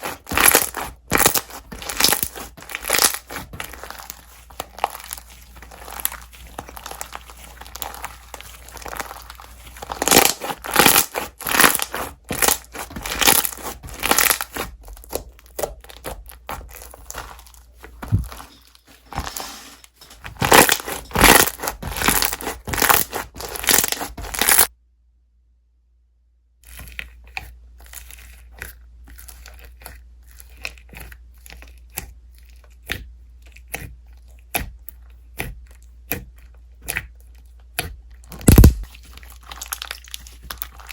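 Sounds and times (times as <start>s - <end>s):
slime crackling and popping: 0.0s - 18.4s, 20.4s - 24.7s, 37.7s - 40.9s.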